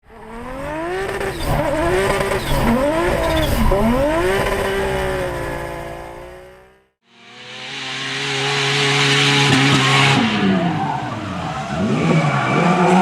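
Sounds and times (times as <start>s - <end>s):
car engine at high revs: 0.0s - 13.0s
tyre squeal: 9.2s - 13.0s.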